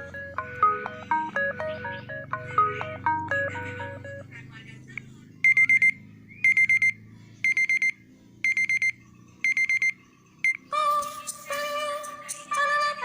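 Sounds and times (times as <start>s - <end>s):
melodic phone tone: 0.0s - 4.3s, 5.4s - 10.6s
quick high alarm beeps: 5.4s - 10.6s.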